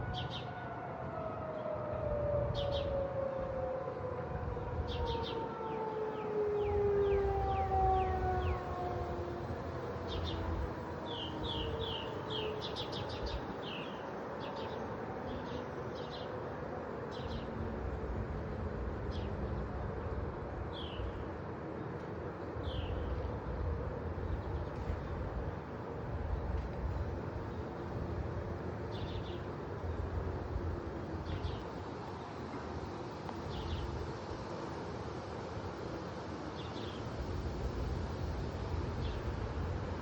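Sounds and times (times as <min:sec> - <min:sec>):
warning siren winding down: 0:00.0 - 0:12.7.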